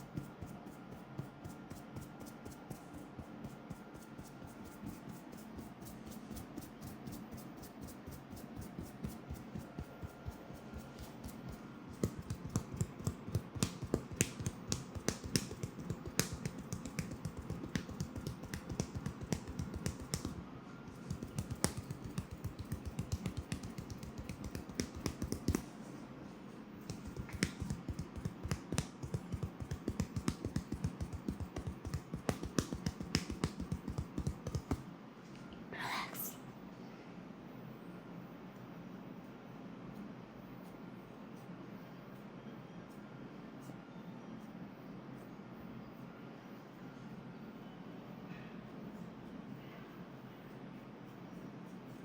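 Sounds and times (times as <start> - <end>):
fingertips tapping on head: 0.0 - 25.7, 26.8 - 34.8.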